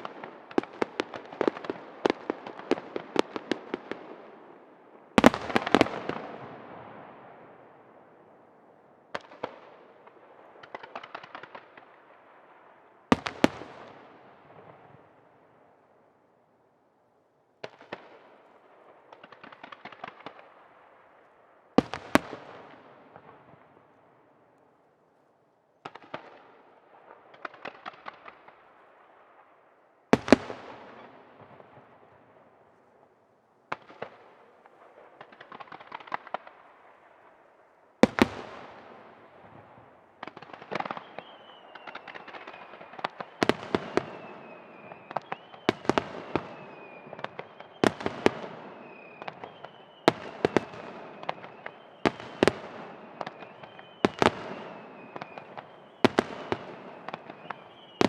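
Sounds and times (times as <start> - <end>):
fireworks crackling after bursts: 0.0 - 7.6, 17.6 - 24.6, 33.7 - 58.0.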